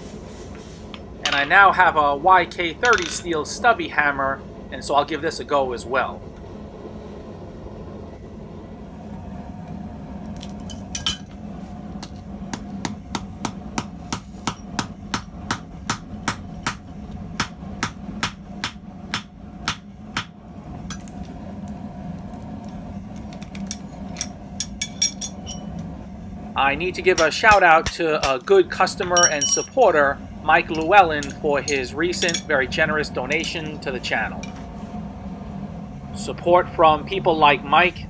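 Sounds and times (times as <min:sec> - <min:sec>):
hammer striking metal on anvil: 0:12.0 - 0:21.1, 0:23.7 - 0:25.7, 0:27.2 - 0:28.6, 0:29.2 - 0:30.0, 0:30.8 - 0:32.5.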